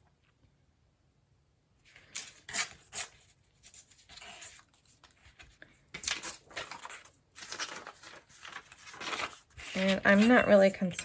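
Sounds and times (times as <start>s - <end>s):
paper rustling: 1.9s - 11.0s
paper tearing: 6.1s - 9.9s.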